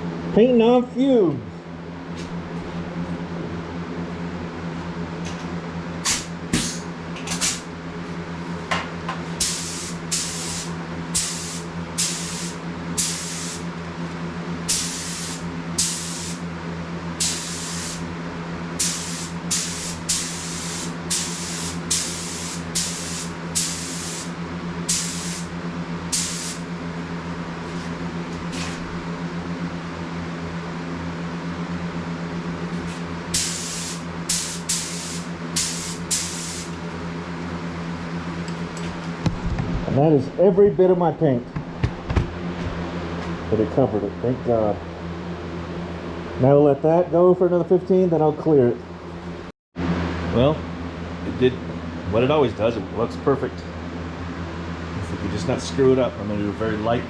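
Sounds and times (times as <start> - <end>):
low mechanical hum: 0.0 - 57.0
paint spray hissing bursts: 9.4 - 13.6, 14.7 - 16.4, 17.2 - 18.1, 18.8 - 25.5, 26.1 - 26.7, 33.4 - 36.8.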